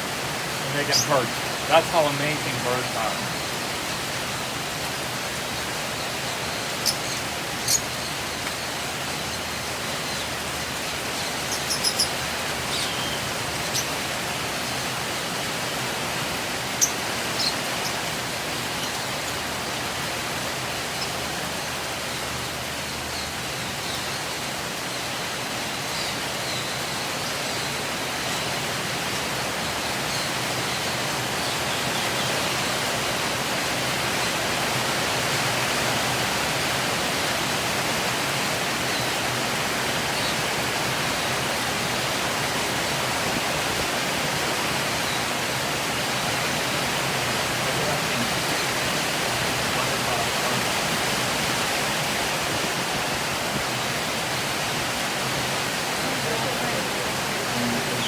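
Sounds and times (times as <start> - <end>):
steady hiss: 0.0 - 58.0
lovebirds chirping: 0.6 - 4.3, 5.6 - 14.0, 16.6 - 33.1, 44.9 - 51.7, 56.0 - 58.0.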